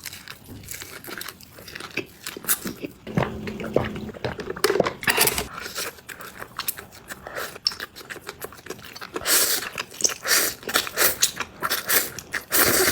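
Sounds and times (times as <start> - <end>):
chewing noodles with wet clicks: 7.4 - 12.9.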